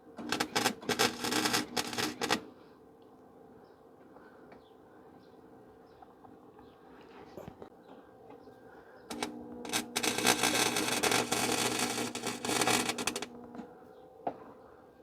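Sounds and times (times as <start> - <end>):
welder humming: 0.2 - 2.5, 9.1 - 13.7
welding arc crackling: 0.2 - 2.5, 9.1 - 13.6.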